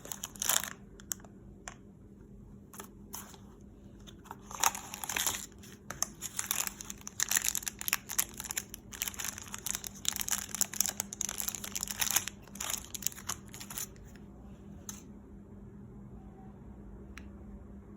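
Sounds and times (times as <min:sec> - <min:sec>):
packaging crinkling and rustling: 0:00.0 - 0:01.2, 0:04.0 - 0:14.1.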